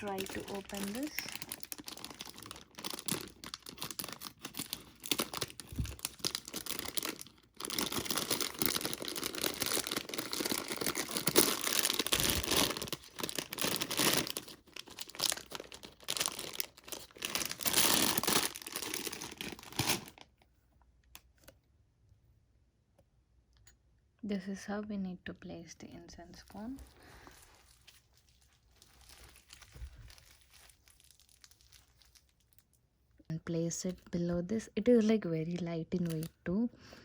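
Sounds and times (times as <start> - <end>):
packet wrapper tearing and crinkling: 0.0 - 20.2, 28.7 - 32.6.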